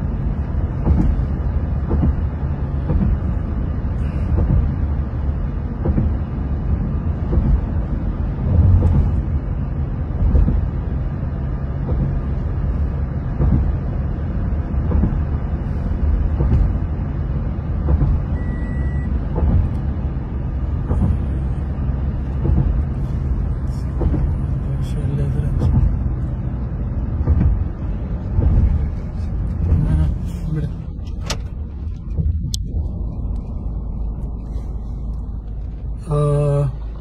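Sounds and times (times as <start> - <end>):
vehicle road noise rumble: 0.0 - 37.0
light thuds: 0.6 - 3.6, 16.2 - 16.9, 22.1 - 24.6, 25.5 - 36.0
short high beep: 18.4 - 19.1.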